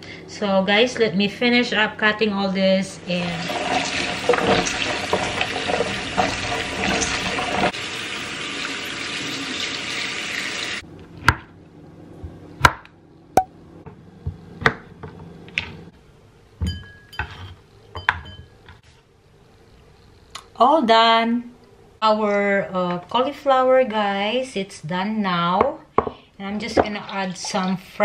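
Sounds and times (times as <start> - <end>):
tap water running: 3.1 - 10.8
dishes and utensils clinking: 16.6 - 18.6.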